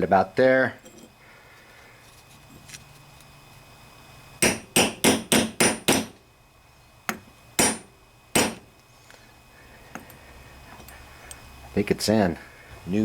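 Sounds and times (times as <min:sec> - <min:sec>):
hammer striking metal: 0:04.4 - 0:06.2, 0:07.1 - 0:08.6.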